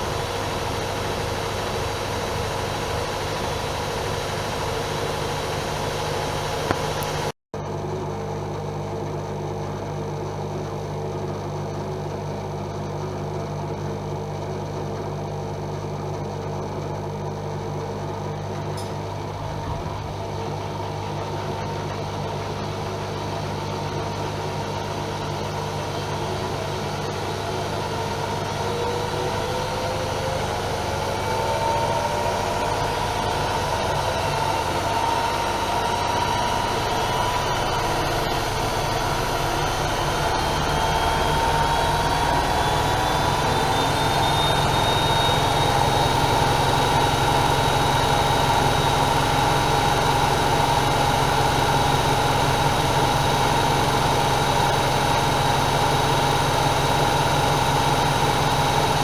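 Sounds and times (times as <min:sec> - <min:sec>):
motor whine rising in pitch: 0:00.0 - 0:07.3, 0:18.8 - 0:59.0
washing machine motor hum: 0:00.0 - 0:08.0, 0:09.0 - 0:59.0.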